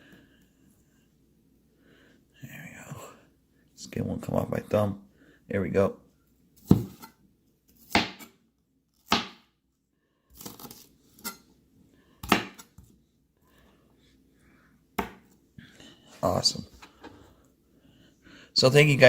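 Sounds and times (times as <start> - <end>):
knife chopping on cutting board: 6.6 - 7.1, 7.8 - 8.3, 9.1 - 9.4, 12.2 - 12.7, 15.0 - 15.2.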